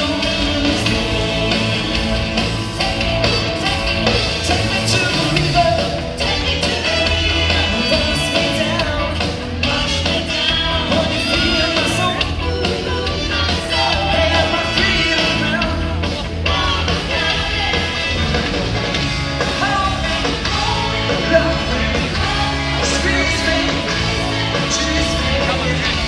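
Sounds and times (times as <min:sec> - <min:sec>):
person singing: 0:00.0 - 0:18.1, 0:19.5 - 0:26.0
heavy bass line: 0:00.0 - 0:26.0
live rock band playing: 0:00.0 - 0:26.0.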